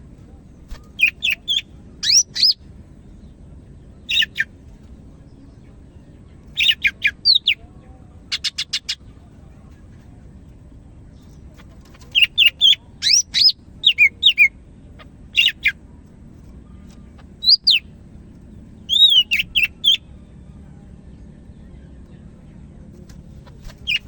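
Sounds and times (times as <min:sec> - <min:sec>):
bird singing whistled notes: 0:00.8 - 0:02.6, 0:17.4 - 0:17.9, 0:18.8 - 0:20.1.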